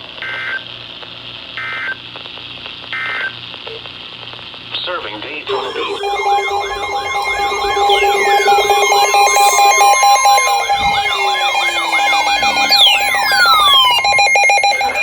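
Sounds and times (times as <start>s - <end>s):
electronic alert tones: 5.5s - 15.0s
fast pulsing tone: 5.5s - 15.0s
long falling sweeps: 5.5s - 15.0s
wailing siren tone: 5.5s - 15.0s.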